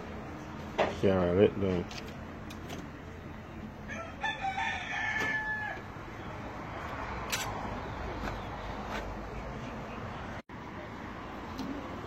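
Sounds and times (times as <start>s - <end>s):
rooster crowing: 3.9s - 5.9s.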